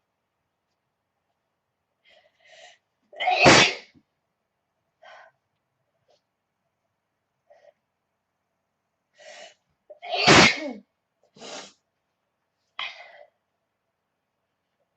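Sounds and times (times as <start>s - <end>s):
woman sneezing: 10.1s - 10.8s.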